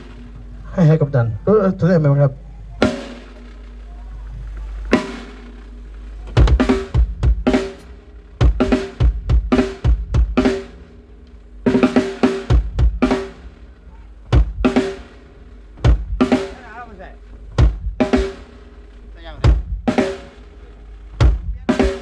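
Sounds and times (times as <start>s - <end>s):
drum kit playing: 0.0s - 22.0s
steady low hum: 0.0s - 22.0s
cymbal and drum hits: 4.9s - 22.0s.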